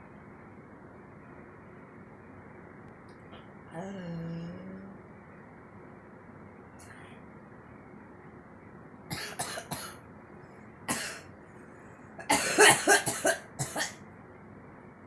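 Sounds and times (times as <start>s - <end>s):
girl coughing: 9.1s - 10.0s, 10.9s - 11.2s, 12.2s - 14.0s.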